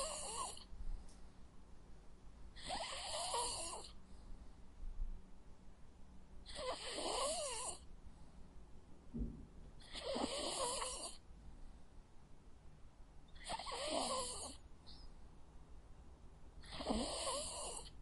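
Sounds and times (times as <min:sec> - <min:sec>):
dog snoring with whistle: 0:00.0 - 0:00.7, 0:02.6 - 0:04.0, 0:06.4 - 0:07.9, 0:09.8 - 0:11.2, 0:13.4 - 0:14.6, 0:16.6 - 0:18.0.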